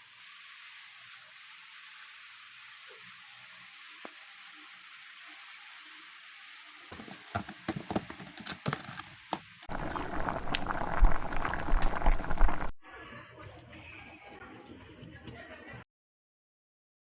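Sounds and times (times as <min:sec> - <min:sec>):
rushing liquid: 0:09.6 - 0:12.7.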